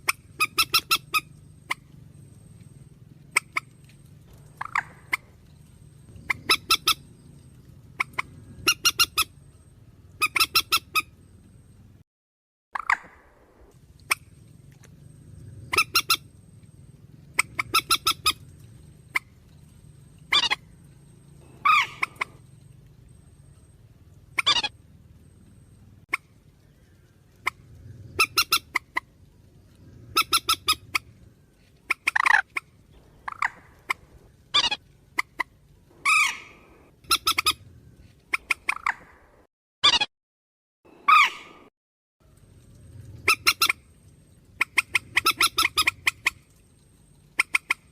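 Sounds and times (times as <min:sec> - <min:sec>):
bird harsh shrieking calls: 0:00.0 - 0:01.9, 0:06.0 - 0:07.3, 0:20.2 - 0:20.7, 0:21.4 - 0:22.4, 0:24.4 - 0:24.7, 0:31.9 - 0:34.8, 0:36.0 - 0:37.6, 0:41.0 - 0:41.7
faint low hum: 0:00.1 - 0:12.0, 0:13.1 - 0:31.8, 0:32.7 - 0:38.3, 0:42.2 - 0:47.4.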